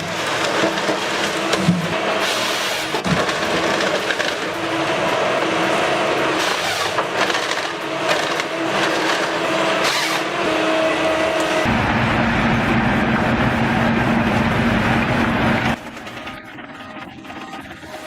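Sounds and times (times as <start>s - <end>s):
wood being crunched and shredded: 0.0s - 13.2s
wood chipper engine running: 0.0s - 18.0s.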